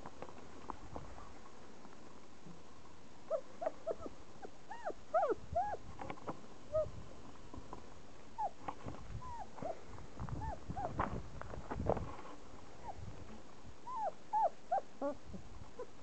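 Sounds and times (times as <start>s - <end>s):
puppies whimpering and squeaking: 3.3s - 5.8s, 9.2s - 9.8s, 10.4s - 11.0s, 13.9s - 15.2s.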